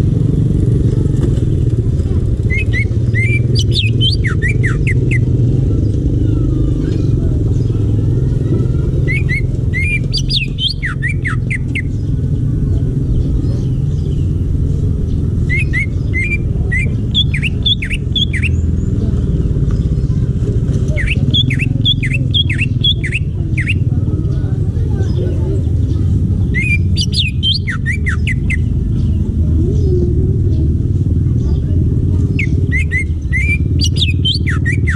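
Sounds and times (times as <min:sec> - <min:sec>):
bird whistled chirps: 0:09.0 - 0:11.9, 0:15.5 - 0:18.6, 0:21.0 - 0:23.8, 0:26.5 - 0:28.7, 0:32.4 - 0:34.9.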